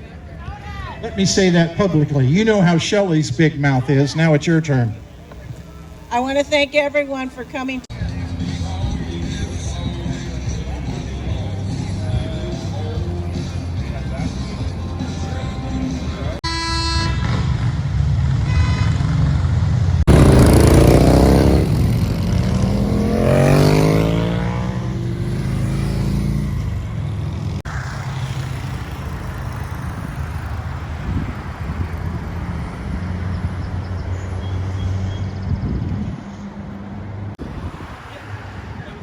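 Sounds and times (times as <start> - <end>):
car engine revving: 7.8 - 16.4, 17.3 - 39.0.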